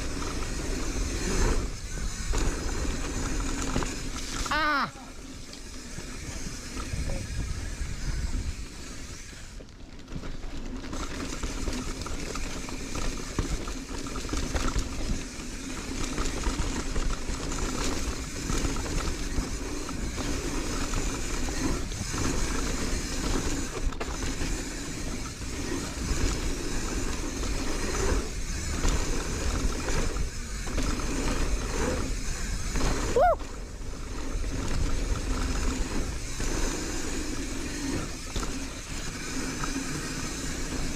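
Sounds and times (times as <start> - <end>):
bike rattling: 0.0 - 40.9
tyre noise on dirt: 0.0 - 40.9
wind rush on microphone: 6.0 - 9.5.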